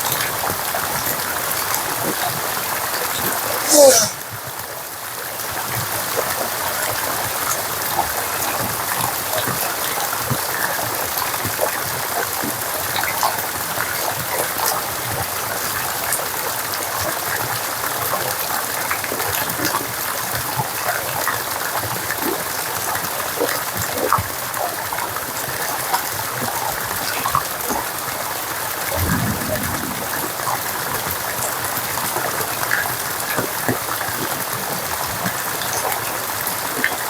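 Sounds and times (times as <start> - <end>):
rain falling: 28.7 - 33.4.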